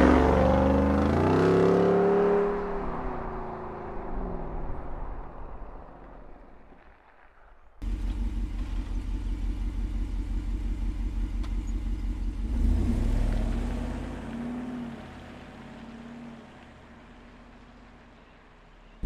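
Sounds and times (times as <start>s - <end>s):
engine exhaust idling and revving: 0.0s - 3.0s, 7.8s - 19.0s.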